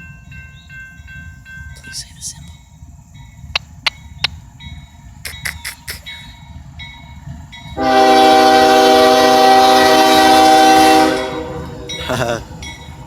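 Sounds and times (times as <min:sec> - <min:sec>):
sharp clicks: 0:05.3 - 0:06.1
locomotive air horn blast: 0:07.8 - 0:11.9.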